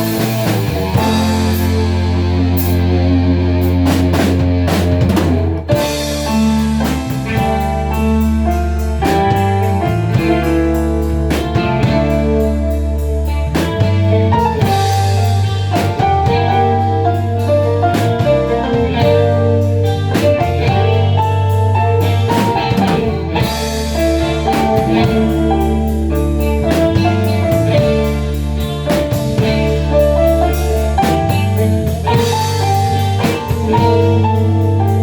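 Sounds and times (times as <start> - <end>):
drum and cymbal hits: 0.0 - 3.0, 3.6 - 16.8
guitar lines: 0.0 - 35.0
live band playing: 0.0 - 35.0.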